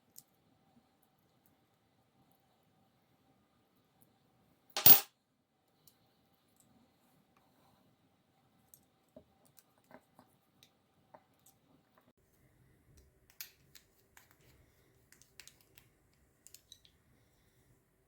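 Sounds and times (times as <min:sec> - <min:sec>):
faint clicks of small parts: 0:00.0 - 0:02.5, 0:05.6 - 0:07.5, 0:08.6 - 0:12.1, 0:12.8 - 0:17.4.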